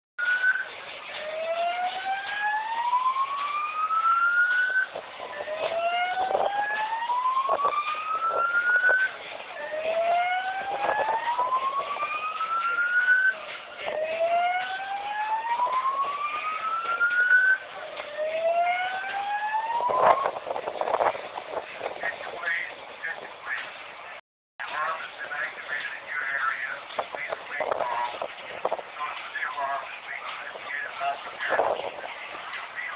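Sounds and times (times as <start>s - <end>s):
fire alarm whoop tone: 0.2s - 20.4s.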